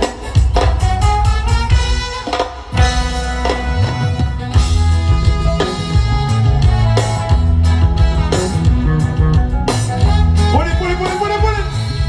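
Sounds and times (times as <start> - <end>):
electric guitar: 0.0 - 12.0
live band through loudspeakers: 0.0 - 12.0
heavy bass line: 2.8 - 12.0.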